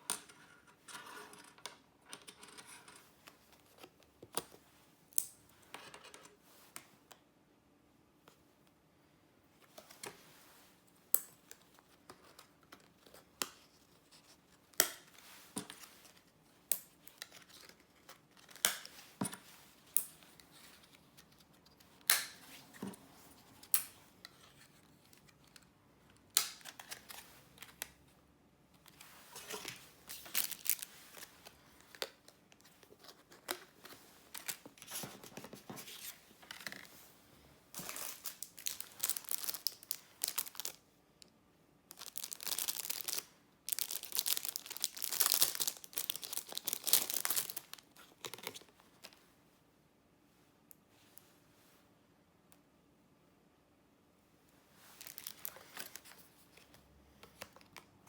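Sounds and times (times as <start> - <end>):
packaging crinkling: 28.9 - 35.0, 37.8 - 40.8, 41.9 - 49.2, 54.9 - 56.4.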